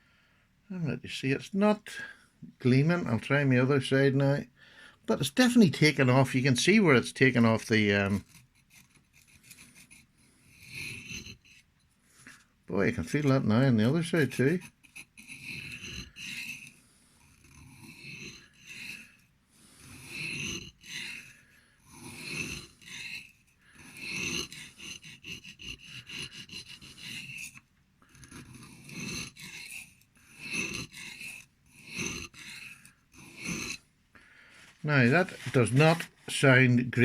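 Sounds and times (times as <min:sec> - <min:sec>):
man talking: 0:00.7 - 0:04.5, 0:05.1 - 0:08.2, 0:12.7 - 0:14.7, 0:34.8 - 0:37.0
knife scraping on sharpening stone: 0:08.2 - 0:11.9, 0:13.2 - 0:33.8.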